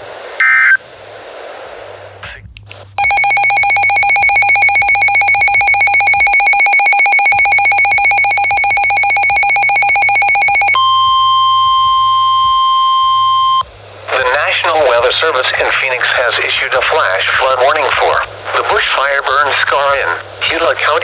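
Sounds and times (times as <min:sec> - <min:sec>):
steady single tone: 0:03.0 - 0:13.6.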